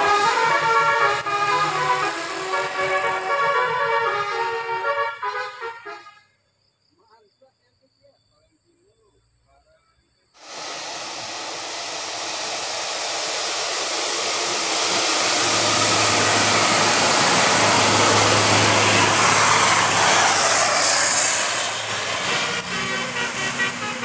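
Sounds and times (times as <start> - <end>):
bus engine and tyre noise: 0.0 - 6.2, 10.4 - 24.0
low engine hum: 10.4 - 24.0.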